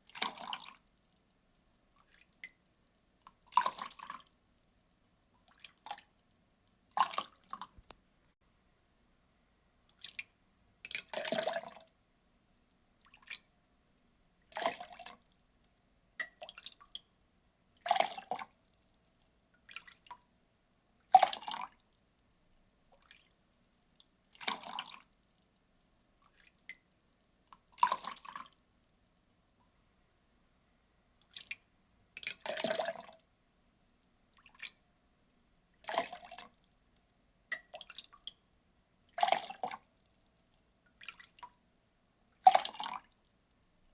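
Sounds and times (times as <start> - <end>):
water pouring in splashes: 0.0 - 0.8, 3.2 - 4.3, 5.4 - 6.1, 10.8 - 11.9, 14.4 - 15.3, 17.8 - 18.5, 21.1 - 21.8, 24.3 - 25.2, 27.7 - 28.6, 32.2 - 33.2, 35.8 - 36.6, 39.1 - 39.9, 42.3 - 43.2
water dripping and trickling: 0.0 - 8.0, 10.0 - 29.6, 31.3 - 31.6, 32.2 - 43.9.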